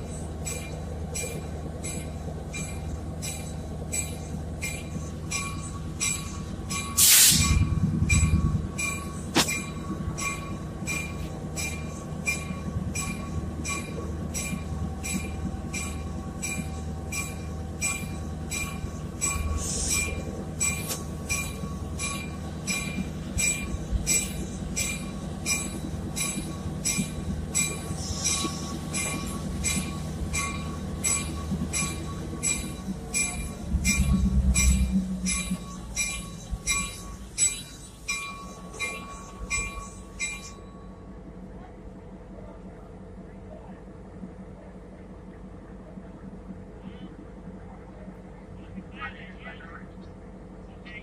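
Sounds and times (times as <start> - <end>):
train rumbling: 0.0 - 51.0
bell ringing: 0.5 - 40.9
loud hiss: 7.0 - 7.6.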